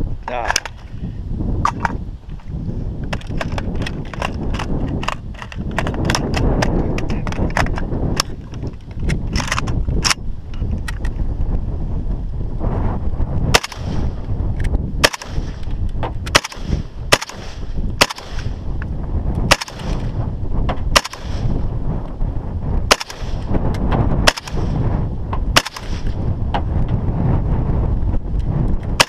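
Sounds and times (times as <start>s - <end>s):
wind rumble on microphone: 0.0s - 29.0s
gunshots: 13.5s - 14.1s, 15.0s - 15.7s, 16.3s - 18.6s, 19.5s - 20.1s, 20.9s - 21.6s, 22.9s - 23.5s, 24.2s - 24.8s, 25.6s - 26.2s.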